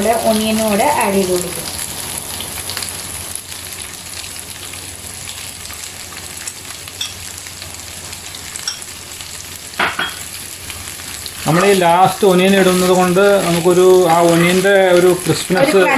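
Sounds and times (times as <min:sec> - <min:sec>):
food sizzling in oil: 0:00.0 - 0:15.9.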